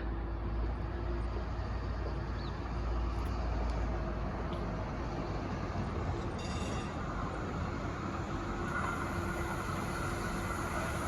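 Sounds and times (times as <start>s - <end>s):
light-rail train rumbling: 0.0s - 11.0s
steady train whine: 0.0s - 11.0s
high wheel squeal: 6.4s - 7.1s, 8.6s - 11.0s.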